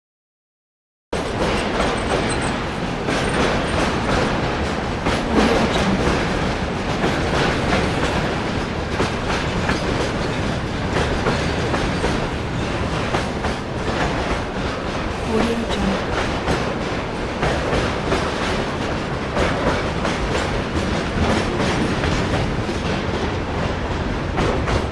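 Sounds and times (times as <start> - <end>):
metallic clacks of wheels: 1.2 - 14.7
train rumbling on rails: 1.2 - 24.9.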